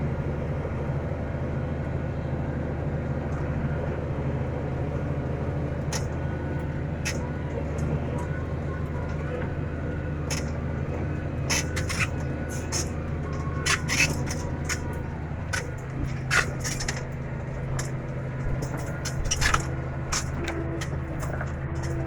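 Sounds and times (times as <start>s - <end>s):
tractor engine running: 0.0s - 22.0s
irregular clicks and clanks: 5.9s - 22.0s.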